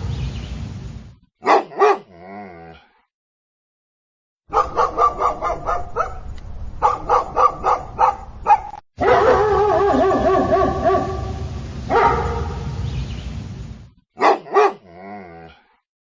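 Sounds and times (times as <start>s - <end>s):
dog barking: 1.4s - 2.2s, 4.5s - 12.7s, 14.2s - 14.9s.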